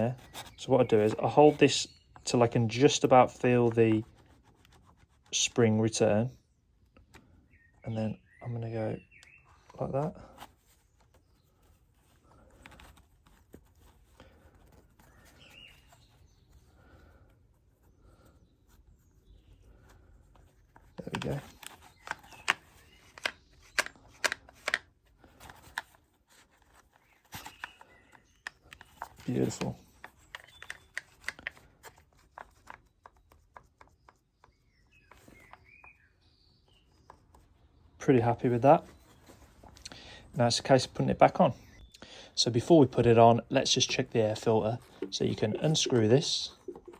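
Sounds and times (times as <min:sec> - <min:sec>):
faint bird chirp: 0:00.0 - 0:02.9, 0:05.6 - 0:24.6, 0:25.2 - 0:46.9
light clicks and taps of handling: 0:19.8 - 0:36.0.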